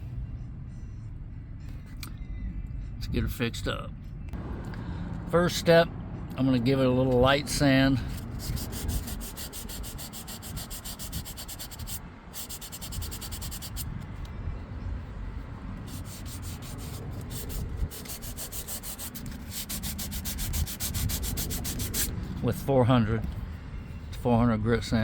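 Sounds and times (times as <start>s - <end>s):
sandpaper rubbing upholstery: 8.1s - 13.9s, 15.9s - 22.1s.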